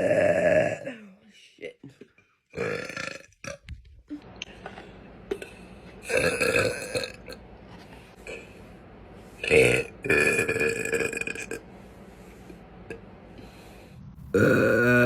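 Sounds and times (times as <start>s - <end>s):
woman burping: 0.0s - 1.1s.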